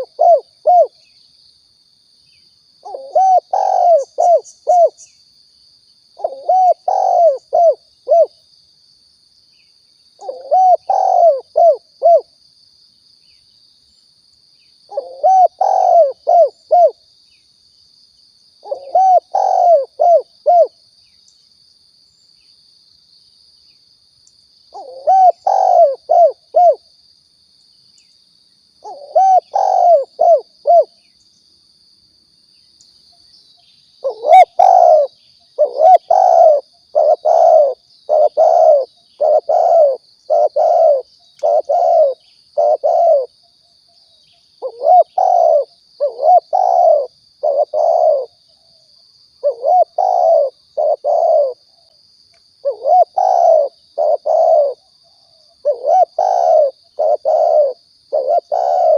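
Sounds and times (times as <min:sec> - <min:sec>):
dove cooing: 0:00.0 - 0:01.0, 0:02.8 - 0:05.0, 0:06.2 - 0:08.4, 0:10.2 - 0:12.3, 0:14.9 - 0:17.0, 0:18.6 - 0:20.8, 0:24.7 - 0:26.8, 0:28.8 - 0:30.9, 0:34.0 - 0:43.3, 0:44.6 - 0:48.4, 0:49.4 - 0:51.6, 0:52.6 - 0:54.9, 0:55.6 - 0:58.9.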